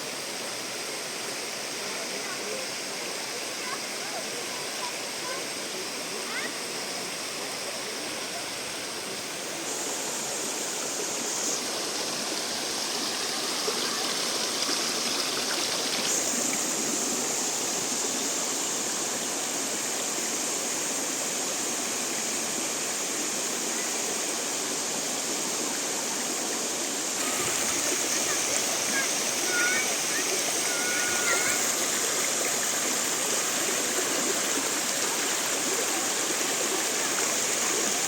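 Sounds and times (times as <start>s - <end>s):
waterfall rushing: 0.0s - 38.0s.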